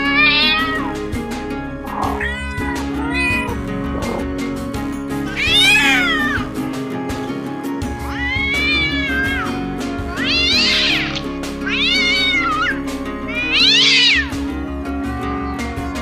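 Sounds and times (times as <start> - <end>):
cat meowing: 0.0 - 1.0, 1.8 - 4.3, 5.2 - 6.5, 8.0 - 14.4
background music with steady beat: 0.0 - 16.0.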